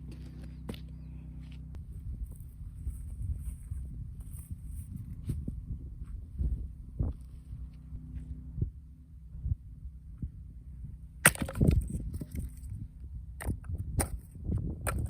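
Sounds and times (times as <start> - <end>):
low steady rumble: 0.0 - 15.0
axe striking firewood: 11.2 - 12.6, 13.4 - 15.0.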